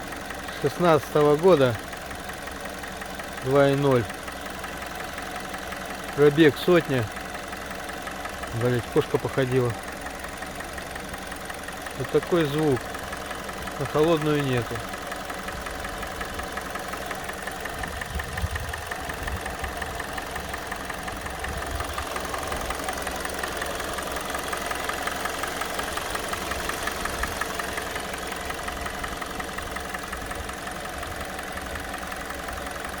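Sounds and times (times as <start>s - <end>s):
car engine idling: 0.0s - 33.0s
fast knock inside engine: 12.3s - 31.6s.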